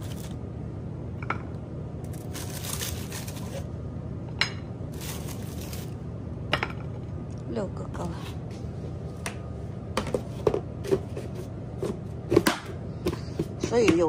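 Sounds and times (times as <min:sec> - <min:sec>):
food packaging crinkling: 0:00.0 - 0:00.4, 0:02.0 - 0:03.7, 0:04.9 - 0:06.0
kitchen ventilation hum: 0:00.0 - 0:14.0.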